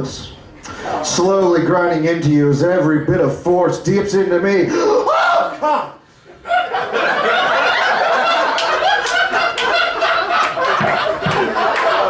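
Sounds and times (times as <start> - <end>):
audience laughing: 5.7 - 12.0
scattered clapping: 8.5 - 12.0.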